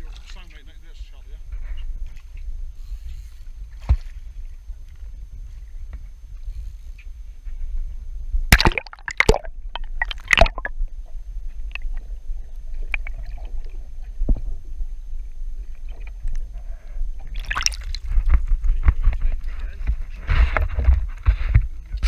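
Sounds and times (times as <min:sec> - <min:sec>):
water splashing against a boat: 0:02.0 - 0:05.1, 0:08.5 - 0:10.7, 0:17.1 - 0:22.0.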